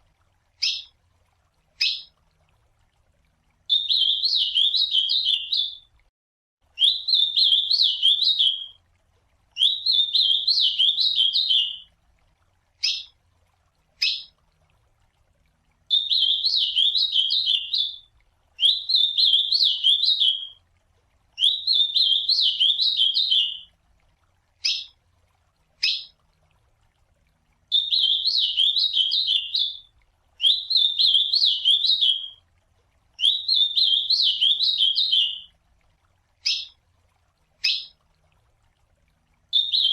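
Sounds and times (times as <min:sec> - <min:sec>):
bird warbling song: 0:00.6 - 0:00.9, 0:01.8 - 0:02.1, 0:03.7 - 0:05.9, 0:06.8 - 0:08.8, 0:09.6 - 0:11.9, 0:12.8 - 0:13.2, 0:14.0 - 0:14.4, 0:15.9 - 0:20.6, 0:21.4 - 0:23.7, 0:24.6 - 0:25.0, 0:25.8 - 0:26.2, 0:27.7 - 0:32.4, 0:33.2 - 0:35.5, 0:36.4 - 0:36.8, 0:37.6 - 0:38.0, 0:39.5 - 0:39.9.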